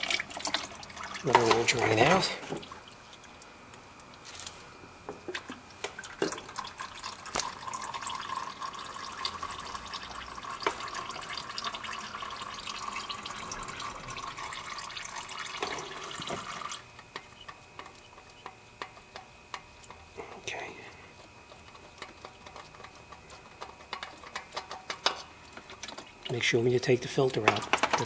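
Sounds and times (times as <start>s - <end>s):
oil pouring into a bucket: 0.0s - 3.4s, 5.4s - 16.9s
oil dripping: 0.0s - 4.5s, 5.3s - 28.0s.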